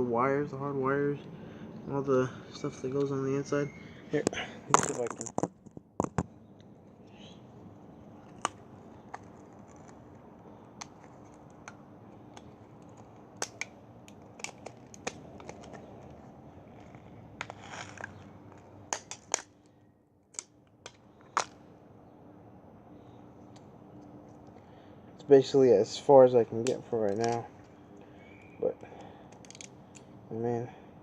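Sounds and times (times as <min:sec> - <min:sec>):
phone parts snapping and scraping: 0:04.1 - 0:07.0, 0:08.0 - 0:21.7, 0:26.5 - 0:30.2.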